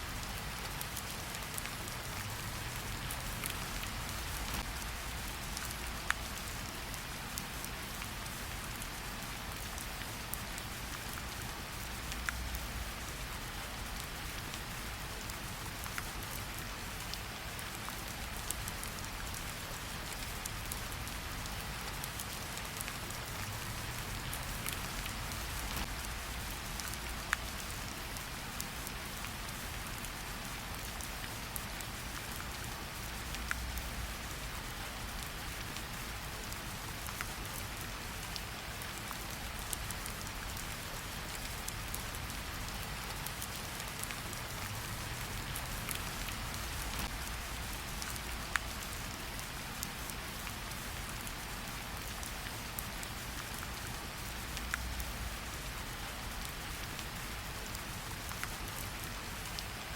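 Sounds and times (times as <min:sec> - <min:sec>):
raindrops ticking on a surface: 0:00.0 - 0:59.9
steady rain falling: 0:00.0 - 0:59.9.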